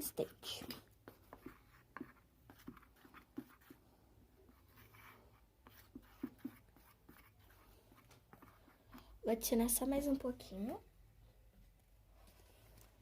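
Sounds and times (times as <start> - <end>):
stirring slime scraping: 0.0 - 9.5.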